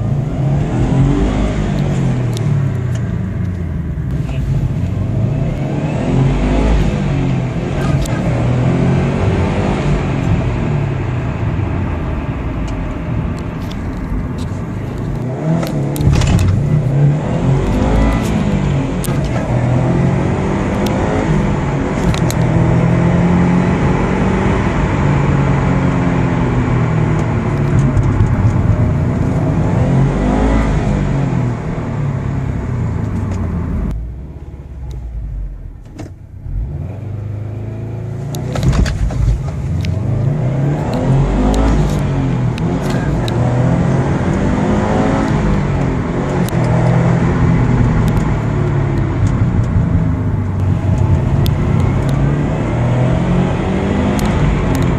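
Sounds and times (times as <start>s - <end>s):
car engine accelerating: 0.0s - 54.9s.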